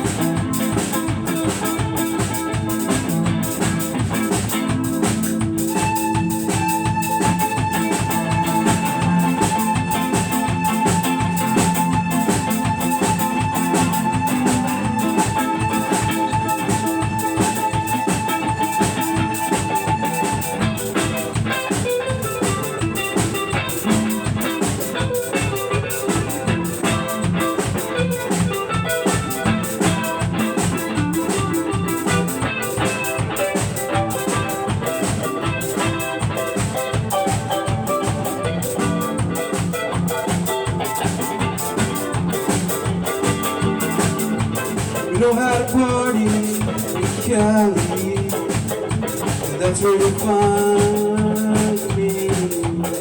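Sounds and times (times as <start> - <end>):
drum kit beat: 0.0 - 53.0
guitar: 0.0 - 53.0.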